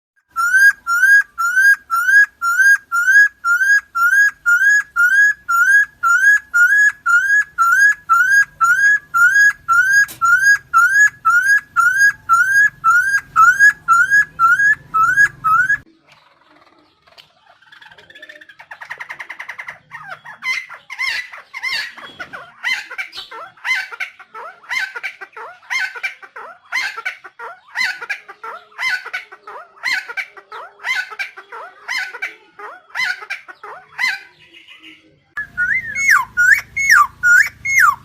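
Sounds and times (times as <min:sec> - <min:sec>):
bird rising whistled notes: 0:35.4 - 0:38.0.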